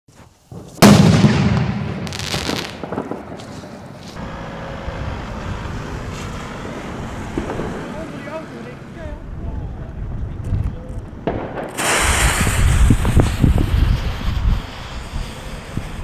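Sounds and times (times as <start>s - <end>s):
firecracker bangs: 0.5s - 3.7s, 6.7s - 8.1s, 11.2s - 16.0s.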